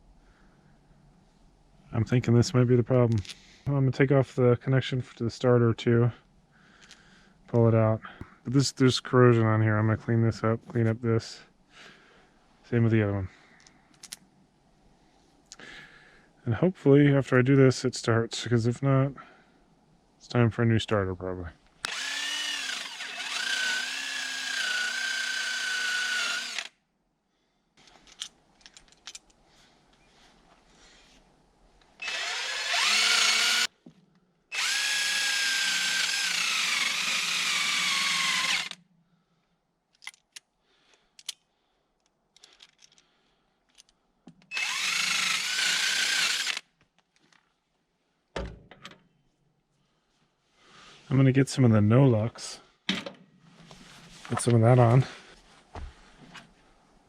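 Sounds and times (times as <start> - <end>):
power drill whining: 21.8 - 26.8, 32.0 - 33.7, 34.5 - 38.8, 44.5 - 46.7.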